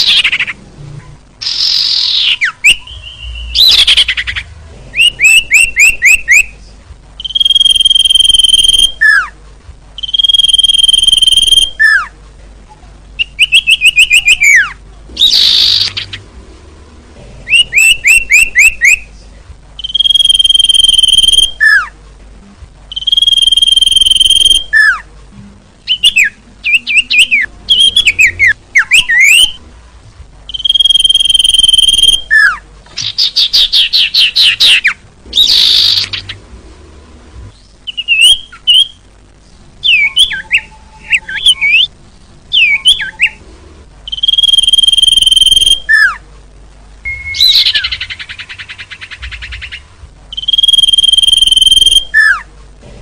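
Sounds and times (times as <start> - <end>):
whistled bird calls: 1.4 - 4.4, 5.0 - 6.5, 7.2 - 9.3, 10.0 - 12.1, 13.2 - 16.2, 17.5 - 19.1, 19.8 - 21.9, 22.9 - 25.0, 25.9 - 29.6, 30.5 - 36.4, 37.8 - 39.0, 39.8 - 41.9, 42.5 - 43.4, 44.1 - 46.2, 47.0 - 52.4
rapid bird chirps: 1.4 - 6.6, 7.2 - 9.3, 10.0 - 12.1, 13.2 - 16.2, 19.8 - 21.9, 22.9 - 25.0, 30.5 - 36.4, 44.1 - 46.2, 47.1 - 52.4.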